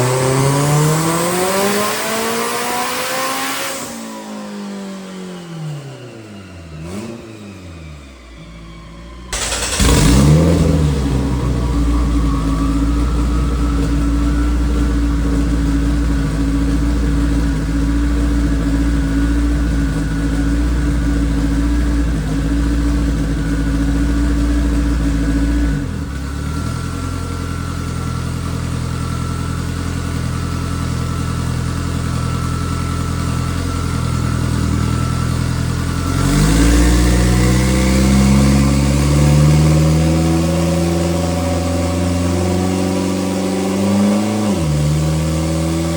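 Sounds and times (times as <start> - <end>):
race car engine revving: 0.0 - 4.2, 6.8 - 8.2, 9.3 - 26.3, 35.7 - 45.9.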